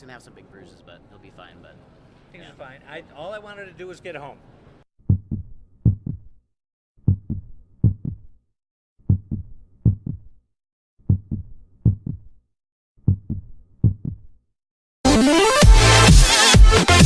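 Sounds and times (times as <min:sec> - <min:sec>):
heartbeat-like low thumps: 0:05.1 - 0:06.3, 0:09.1 - 0:10.3.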